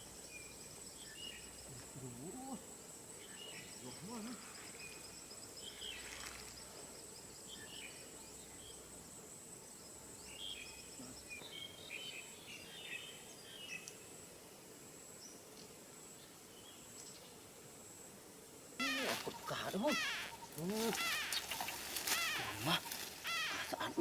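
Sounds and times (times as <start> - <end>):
high-pitched insect drone: 18.8 - 24.0.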